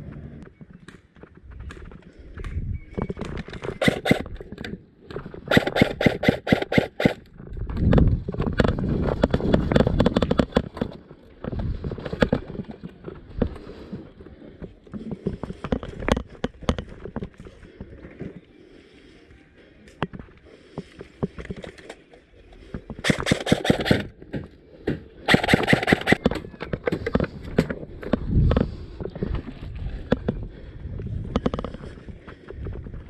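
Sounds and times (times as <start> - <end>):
airsoft rifle shots: 3.8 - 4.3, 5.5 - 7.2, 23.0 - 24.1, 25.3 - 26.4.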